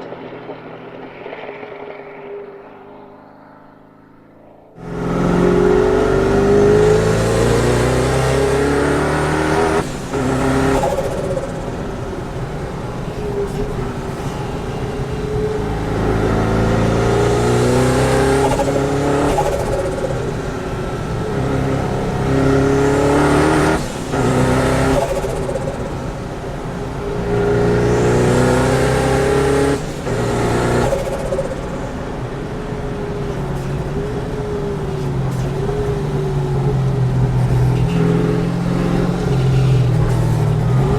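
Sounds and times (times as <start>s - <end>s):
car engine accelerating hard: 0.0s - 40.9s.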